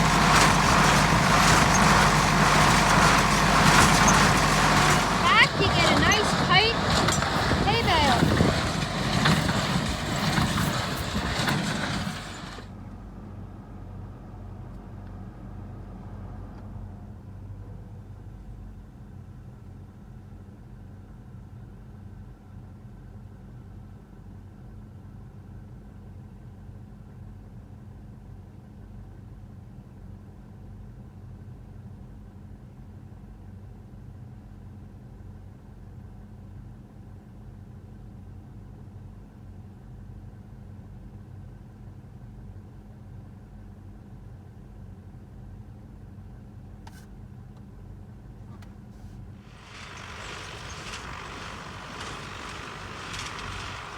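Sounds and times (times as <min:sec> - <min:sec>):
tractor diesel engine running: 0:00.0 - 0:15.8, 0:49.1 - 0:53.9.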